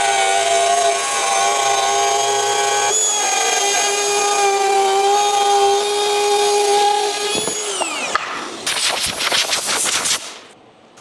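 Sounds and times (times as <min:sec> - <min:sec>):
wood router whining: 0:00.0 - 0:08.8.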